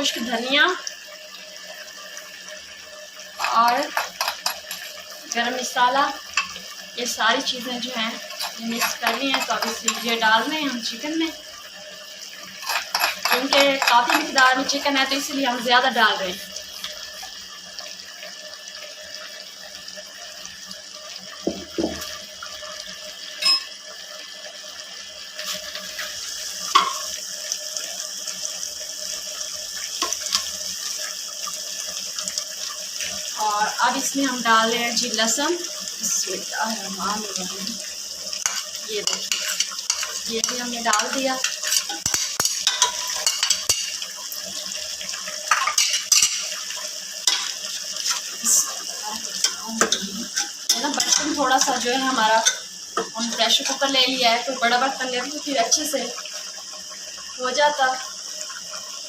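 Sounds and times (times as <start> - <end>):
cooking pot hissing: 0.0 - 59.0
food sizzling in hot oil: 0.0 - 59.0
utensils clinking against pot: 3.4 - 5.0, 6.3 - 6.6, 8.2 - 10.3, 12.5 - 14.8, 23.4 - 23.8, 26.7 - 27.1, 38.4 - 44.0, 45.5 - 46.6, 47.3 - 48.3, 49.4 - 51.8, 52.4 - 53.8.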